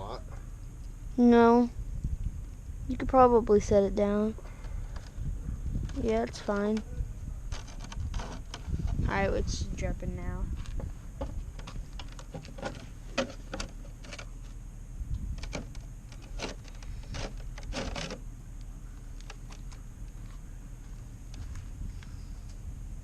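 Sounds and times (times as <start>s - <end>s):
low steady rumble: 0.0s - 23.0s.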